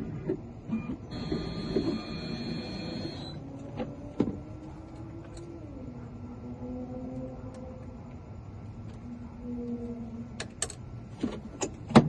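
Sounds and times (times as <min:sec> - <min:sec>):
small electric motor whining: 0:01.1 - 0:03.4.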